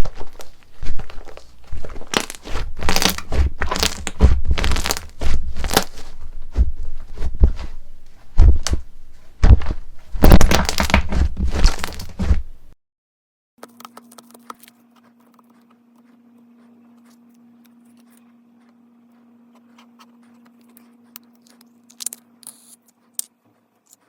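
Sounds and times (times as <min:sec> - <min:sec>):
slime crackling and popping: 0:00.0 - 0:06.1, 0:09.4 - 0:12.4
soft low thuds: 0:02.5 - 0:12.7.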